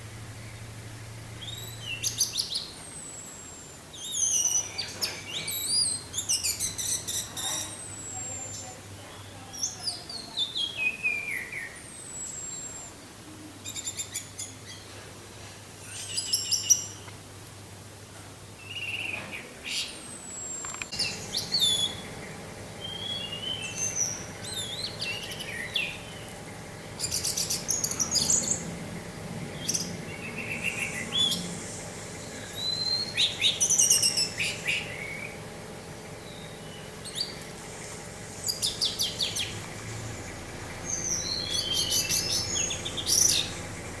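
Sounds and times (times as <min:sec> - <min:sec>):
thrush singing: 0:20.8 - 0:44.0.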